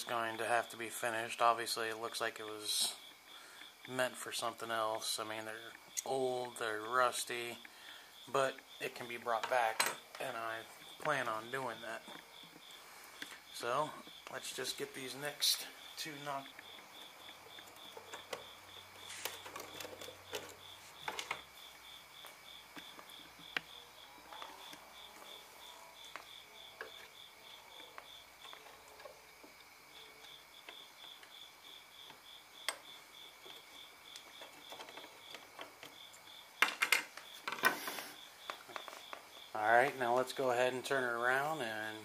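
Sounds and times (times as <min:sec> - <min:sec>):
insect chirping: 0:00.0 - 0:42.0
hand tools clicking and knocking: 0:09.2 - 0:12.3, 0:16.0 - 0:21.5, 0:32.0 - 0:36.0, 0:36.6 - 0:39.2.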